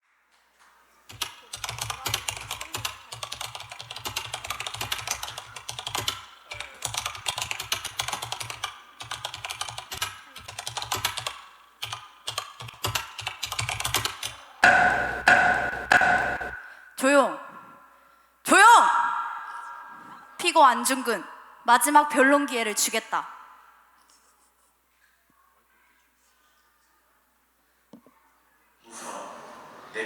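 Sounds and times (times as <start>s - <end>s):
keyboard typing clicks: 1.1s - 16.7s.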